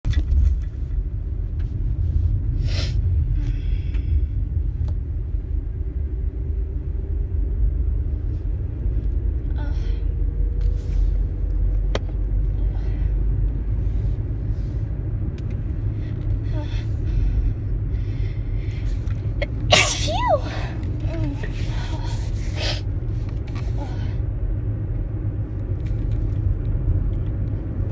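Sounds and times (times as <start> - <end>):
steady low rumble: 0.1 - 27.9
woman sneezing: 19.7 - 22.8.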